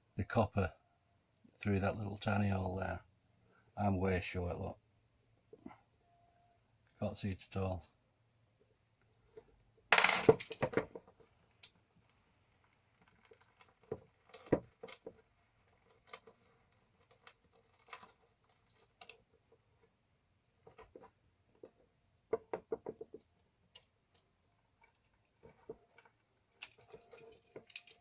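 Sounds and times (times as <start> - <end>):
clicks of small metal parts: 26.6 - 28.0.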